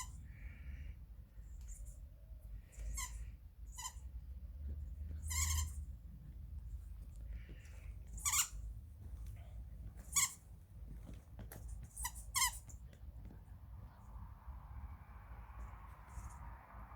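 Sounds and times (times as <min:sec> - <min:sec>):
squeaky toy ball squeaking: 0:02.7 - 0:04.1, 0:05.2 - 0:05.9, 0:08.1 - 0:08.6, 0:10.0 - 0:10.4, 0:11.8 - 0:12.8
faint clicks and rustles: 0:05.9 - 0:14.3.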